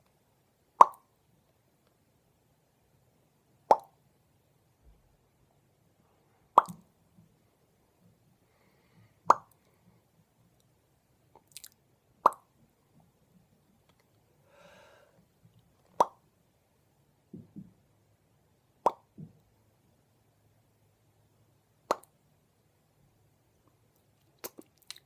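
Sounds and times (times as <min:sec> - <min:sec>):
mouth popping: 0:00.8 - 0:01.1, 0:03.7 - 0:03.9, 0:06.6 - 0:06.8, 0:09.3 - 0:09.5, 0:11.4 - 0:12.5, 0:16.0 - 0:16.2.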